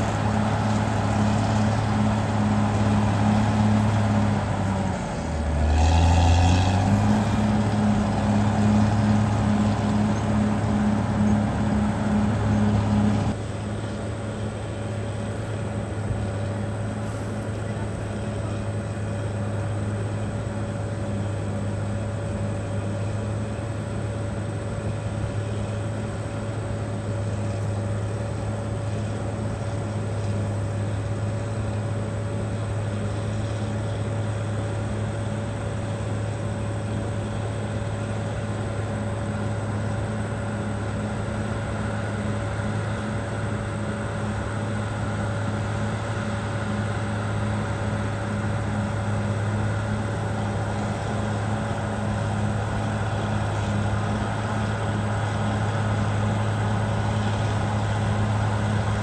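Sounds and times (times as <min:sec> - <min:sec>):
bulldozer diesel engine drone: 0:00.0 - 0:59.0.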